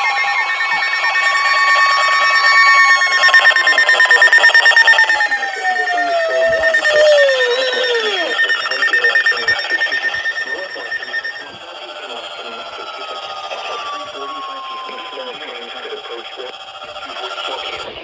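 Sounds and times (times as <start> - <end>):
tone sliding down in pitch: 0.0 - 17.8
emergency alert tones: 0.0 - 18.0
fast pulsing tone: 0.0 - 18.0.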